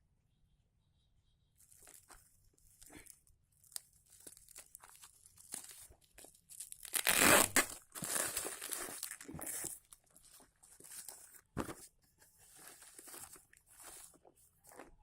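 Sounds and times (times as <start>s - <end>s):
packaging rustling and crinkling: 1.6s - 15.0s
packaging tearing: 2.8s - 11.2s.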